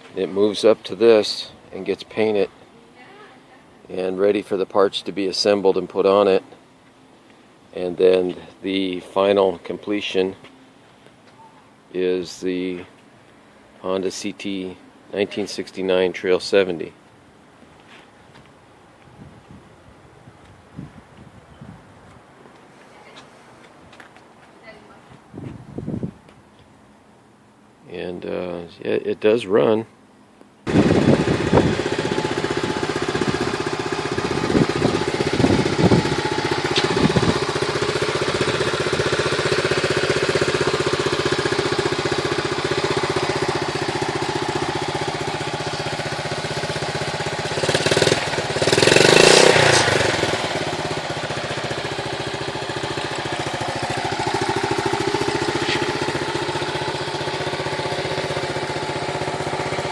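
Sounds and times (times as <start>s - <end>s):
small engine idling and revving: 30.7s - 59.9s.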